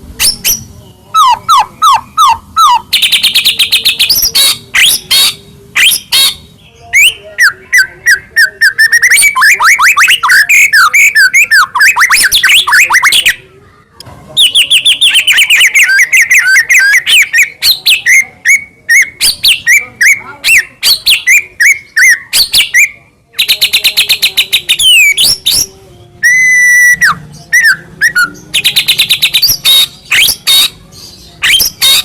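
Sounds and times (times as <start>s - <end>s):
bird singing whistled notes: 14.4s - 30.7s, 31.4s - 32.0s.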